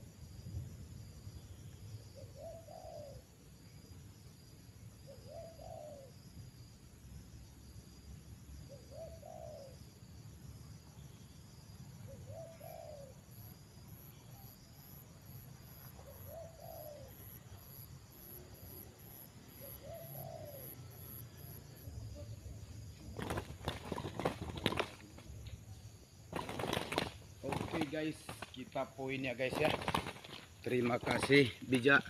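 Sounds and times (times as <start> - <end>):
dove cooing: 2.2 - 3.3, 5.1 - 6.1, 8.7 - 9.8, 12.1 - 13.2, 16.0 - 17.5, 18.3 - 25.4, 26.3 - 28.4, 29.4 - 31.5
wings flapping and rustling: 22.9 - 25.6, 26.3 - 32.0.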